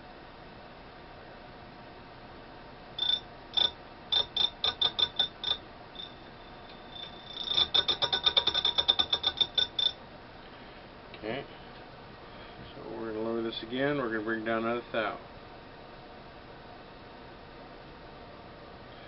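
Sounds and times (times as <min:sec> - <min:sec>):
grinding wheel ringing ticks: 0:03.0 - 0:10.0.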